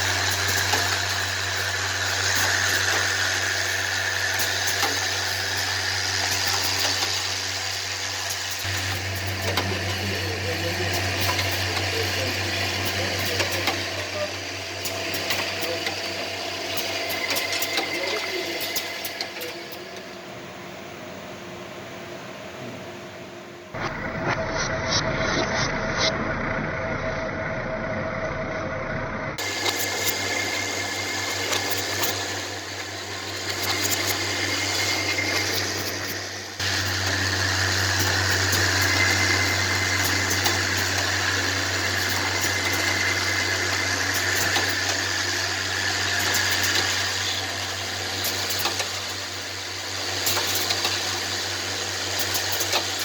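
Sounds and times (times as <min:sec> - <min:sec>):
mechanical clicks and clacks: 0:00.0 - 0:07.4, 0:08.2 - 0:20.2, 0:29.4 - 0:49.4, 0:50.1 - 0:51.3, 0:52.0 - 0:53.0
machine motor hum: 0:00.0 - 0:53.0.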